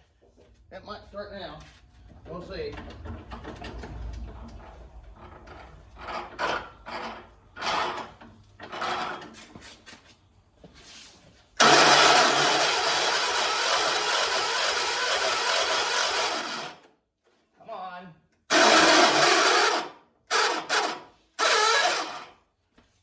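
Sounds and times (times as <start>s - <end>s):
engine starter cranking and grinding: 2.6s - 9.4s, 11.6s - 16.9s, 18.5s - 22.4s.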